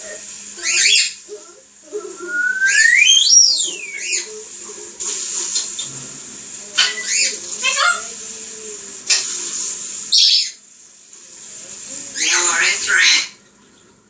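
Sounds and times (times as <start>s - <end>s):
parrot whistling: 0.0s - 1.2s, 2.1s - 4.3s, 6.8s - 8.0s, 10.1s - 10.6s.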